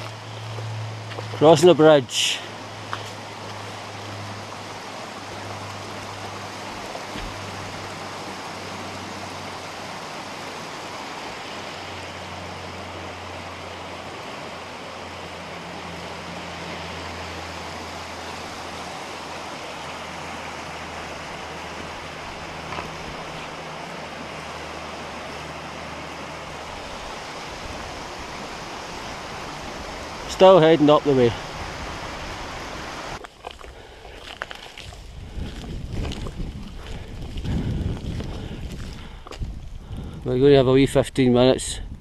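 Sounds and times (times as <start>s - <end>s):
river flowing: 0.0s - 40.2s.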